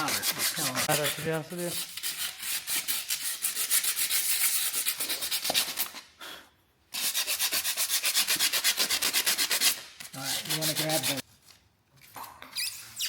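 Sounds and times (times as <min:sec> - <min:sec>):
hand sanding metal: 0:00.0 - 0:06.0, 0:06.9 - 0:11.2.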